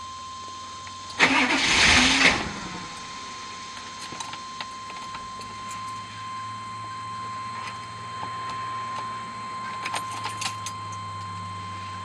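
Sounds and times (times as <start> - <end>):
low hum: 0.0 - 12.0
steady high tone: 1.2 - 12.0
car keys jangling: 9.8 - 10.8.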